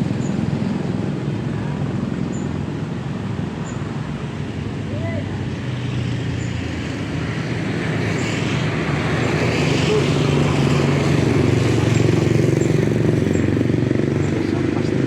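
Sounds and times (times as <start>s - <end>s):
vehicle engine running: 10.8s - 15.0s.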